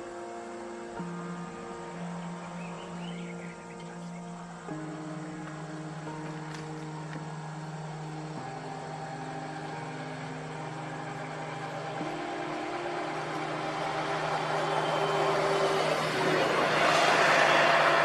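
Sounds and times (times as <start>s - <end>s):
vehicle engine approaching: 9.7s - 18.0s.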